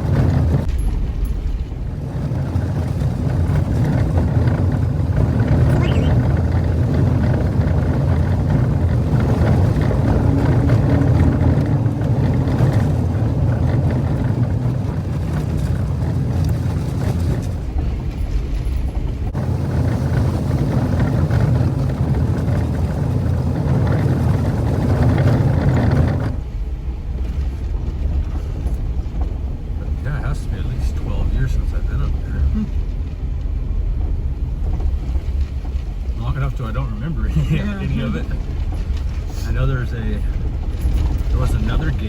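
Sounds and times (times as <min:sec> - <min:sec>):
car engine drone: 0:00.0 - 0:42.0
tyre and road noise: 0:00.0 - 0:42.0.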